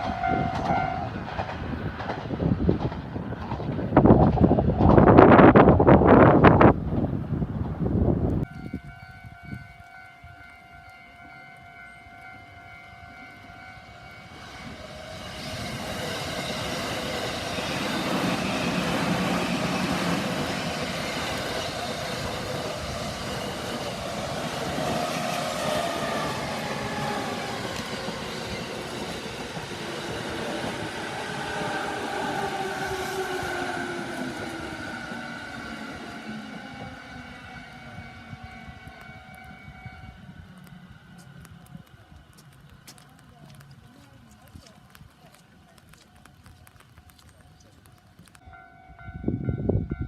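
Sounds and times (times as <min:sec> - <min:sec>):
level crossing warning bell: 0:00.0 - 0:01.1, 0:08.5 - 0:14.9, 0:35.6 - 0:40.4, 0:48.4 - 0:50.0
wind noise on microphone: 0:00.0 - 0:10.5, 0:14.5 - 0:42.9, 0:48.1 - 0:50.0
train passing: 0:00.0 - 0:50.0.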